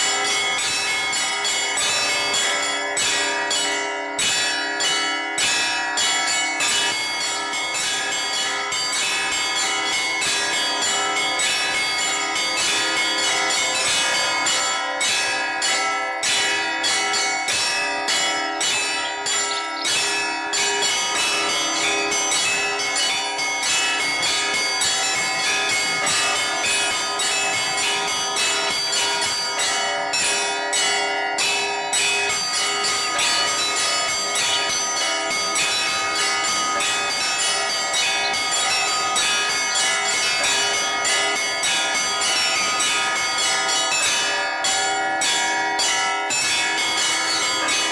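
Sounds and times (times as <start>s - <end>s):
church bells pealing: 0.0s - 47.9s.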